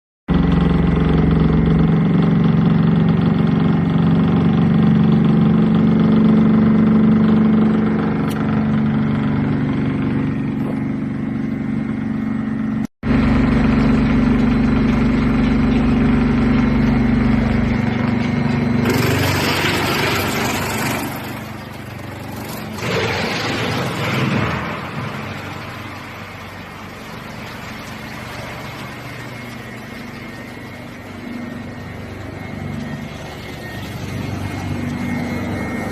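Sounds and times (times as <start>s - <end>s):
wood chipper running: 0.3s - 35.9s
wood chipper chipping material: 13.1s - 30.6s.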